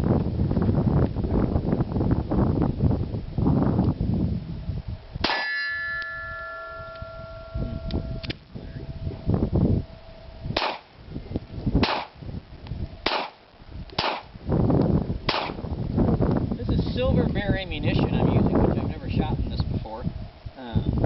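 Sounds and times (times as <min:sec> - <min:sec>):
wind rumble on microphone: 0:00.0 - 0:21.0
steel target ringing: 0:05.2 - 0:10.8
pistol shots: 0:10.6 - 0:10.9, 0:11.8 - 0:12.2, 0:13.0 - 0:13.4, 0:14.0 - 0:14.3, 0:15.3 - 0:15.6.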